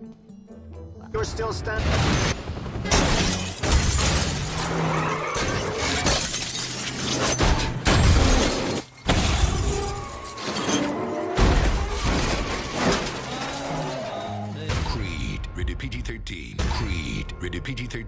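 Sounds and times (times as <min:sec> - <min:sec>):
glass shattering: 0:01.9 - 0:14.5
dramatic music: 0:12.6 - 0:18.0.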